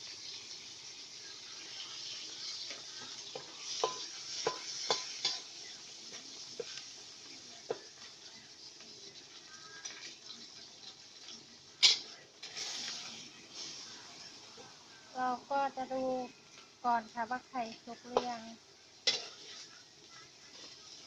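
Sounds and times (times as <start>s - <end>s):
food sizzling in a wok: 0.0s - 21.0s
spatula clinking against pan: 3.3s - 5.5s, 19.0s - 19.6s.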